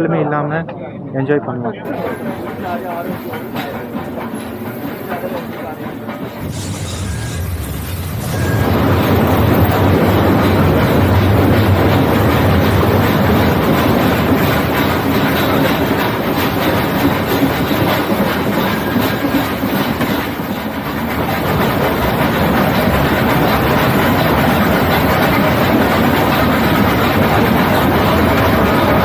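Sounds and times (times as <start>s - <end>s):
clickety-clack over rail joints: 1.9s - 29.0s
train wheels rumbling on rail: 1.9s - 29.0s.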